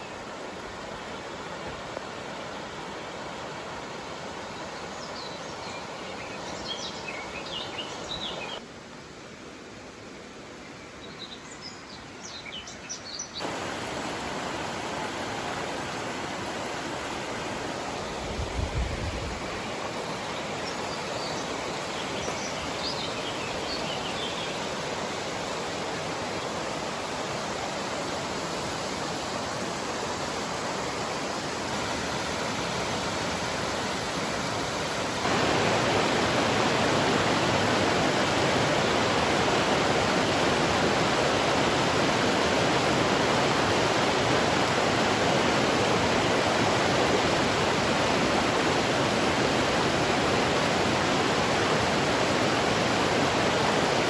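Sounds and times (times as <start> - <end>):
water rushing: 0.0 - 10.4, 13.3 - 54.0
small birds chirping: 4.4 - 8.6, 10.9 - 13.6, 19.5 - 24.7.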